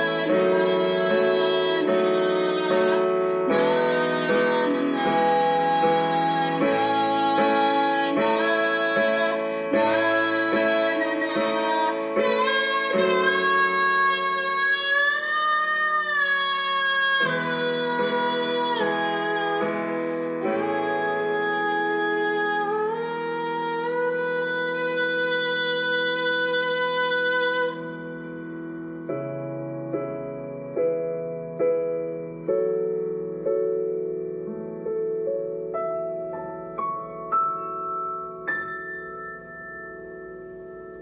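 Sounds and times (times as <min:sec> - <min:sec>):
woman singing: 0:00.0 - 0:28.6.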